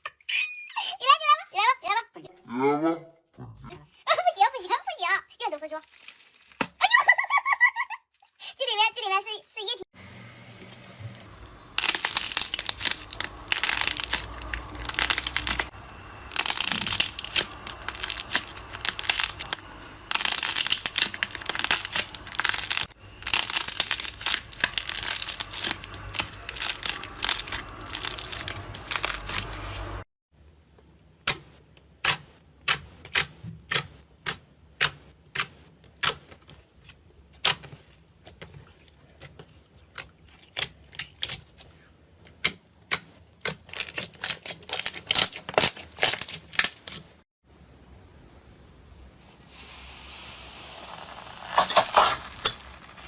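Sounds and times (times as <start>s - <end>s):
crinkling handling noise: 5.4s - 6.9s, 7.7s - 8.6s, 11.3s - 30.0s.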